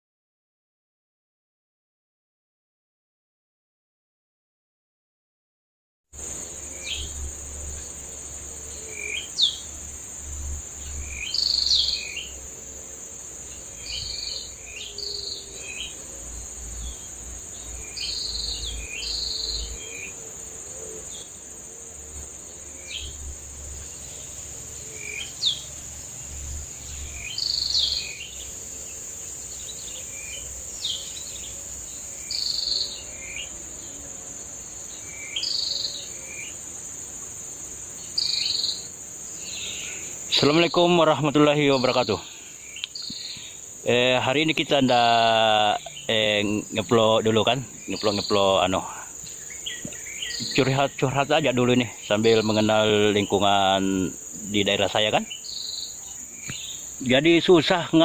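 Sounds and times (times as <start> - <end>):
insect drone: 6.1 - 58.0
sharp bird calls: 10.8 - 12.4, 13.4 - 20.2, 22.6 - 33.6, 35.0 - 36.6, 38.0 - 58.0.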